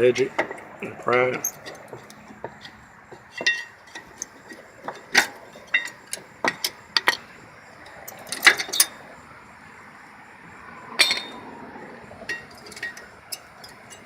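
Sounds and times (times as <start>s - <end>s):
metallic clicks and clinks: 0.2s - 9.0s, 12.2s - 14.0s.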